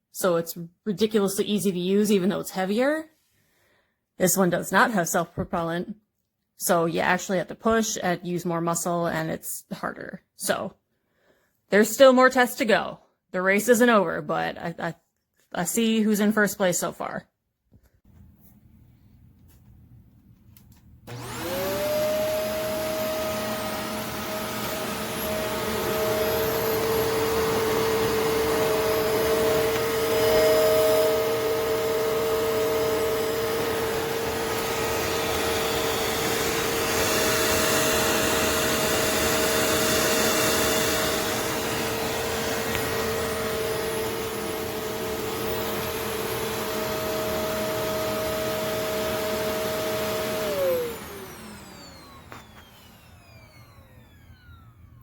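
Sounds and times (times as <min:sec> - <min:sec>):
vacuum cleaner running: 0:21.0 - 0:55.0.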